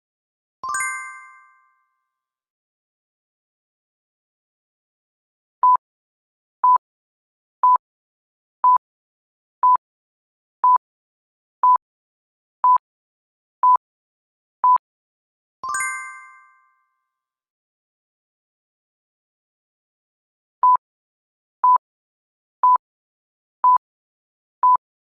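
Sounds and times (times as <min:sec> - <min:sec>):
bell-like ding: 0:00.6 - 0:01.9, 0:15.6 - 0:16.9.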